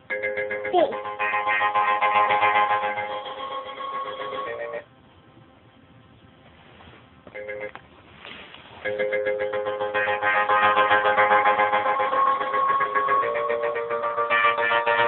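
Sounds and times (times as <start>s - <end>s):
phone ringtone melodies: 0.0s - 4.8s, 7.4s - 7.7s, 8.8s - 15.0s.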